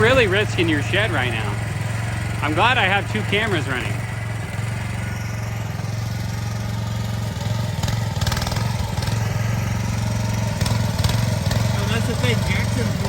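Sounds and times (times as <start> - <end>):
excavator engine running: 0.0 - 13.0.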